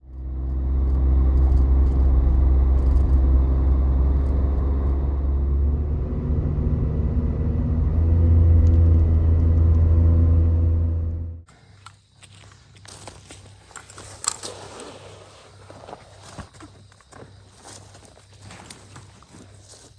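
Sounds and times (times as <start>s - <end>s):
car engine drone: 0.0s - 11.8s.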